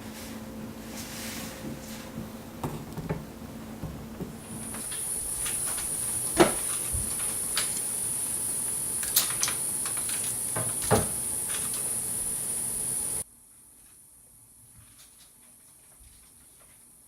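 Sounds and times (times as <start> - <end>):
high-pitched hiss: 4.4 - 13.2.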